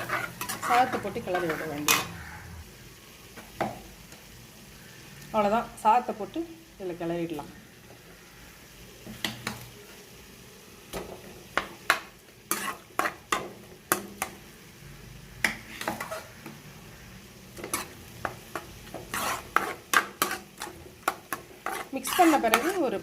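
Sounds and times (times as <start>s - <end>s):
spoon stirring rice in a pan: 0.0s - 2.0s, 9.0s - 10.1s, 10.9s - 14.5s, 15.4s - 16.6s, 17.5s - 23.0s
spoon scraping and knocking pan: 0.0s - 2.3s, 10.9s - 14.4s, 15.4s - 16.6s, 17.6s - 23.0s.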